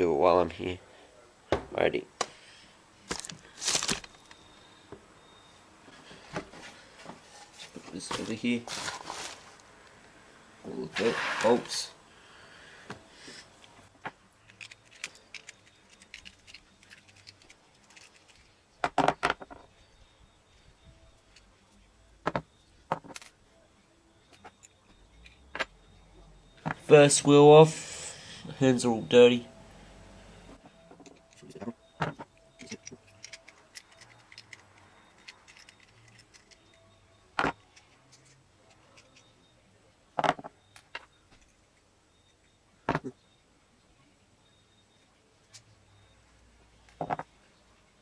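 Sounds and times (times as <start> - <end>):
skateboard parts clicking: 32.6 - 36.7.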